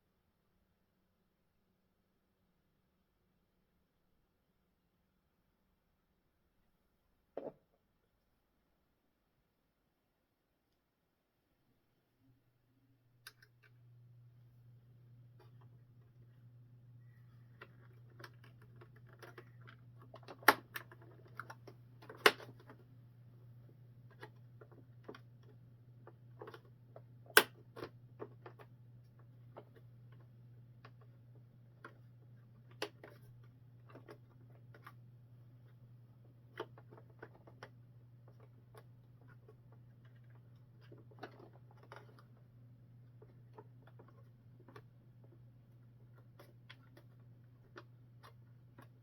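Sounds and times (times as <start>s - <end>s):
plastic parts clicking: 17.5s - 22.8s, 36.5s - 42.4s
plastic snaps: 17.6s - 22.8s.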